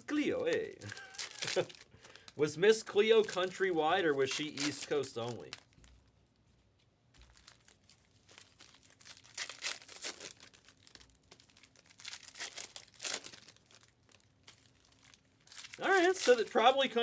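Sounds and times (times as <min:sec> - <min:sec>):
plastic wrappers crinkling and tearing: 0:00.0 - 0:17.0.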